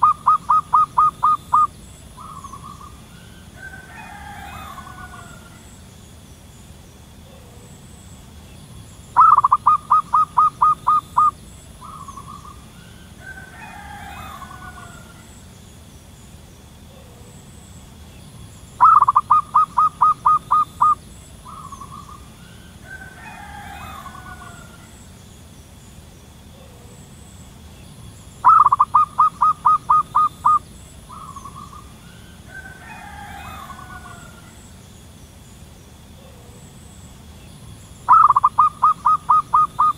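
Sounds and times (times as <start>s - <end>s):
dove staccato cooing: 0.0s - 5.7s, 9.1s - 15.3s, 18.8s - 25.0s, 28.4s - 34.6s, 38.0s - 39.9s
faint longer bird calls: 0.0s - 6.0s, 8.5s - 15.7s, 18.1s - 25.3s, 27.8s - 35.0s, 37.4s - 39.9s
steady high hum: 0.0s - 39.9s.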